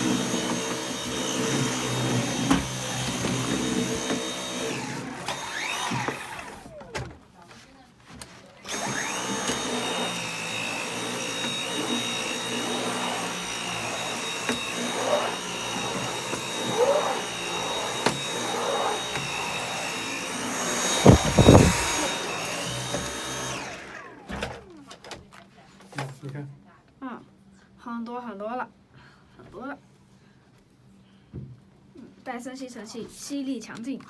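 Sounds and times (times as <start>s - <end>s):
vacuum cleaner whining: 0.0s - 7.2s, 8.6s - 25.0s.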